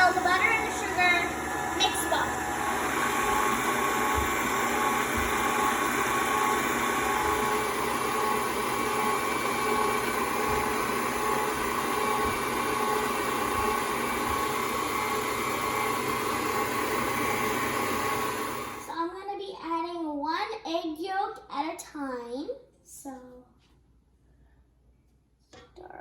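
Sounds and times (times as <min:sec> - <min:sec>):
stand mixer motor whine: 0:00.0 - 0:18.9.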